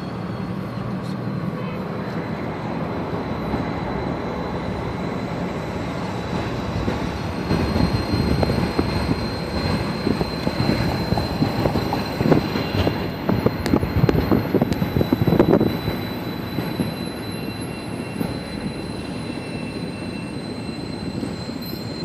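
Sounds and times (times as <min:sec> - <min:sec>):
thin high tone: 0:07.3 - 0:22.0.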